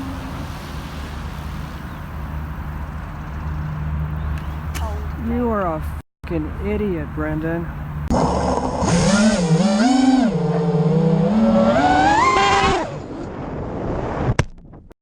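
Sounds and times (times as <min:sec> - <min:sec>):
quadcopter motors whining: 0:08.1 - 0:13.2.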